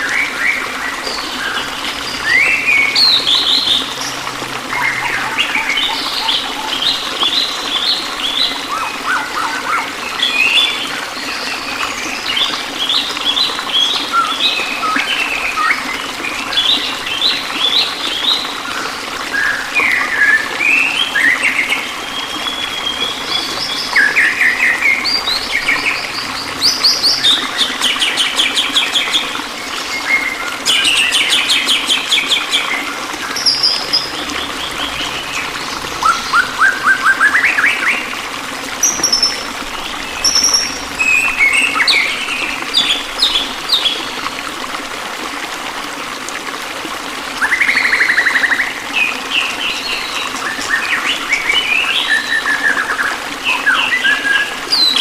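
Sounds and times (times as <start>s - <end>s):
flowing water: 0.0s - 55.0s
songbirds chirping and trilling: 0.2s - 10.6s, 19.5s - 44.2s.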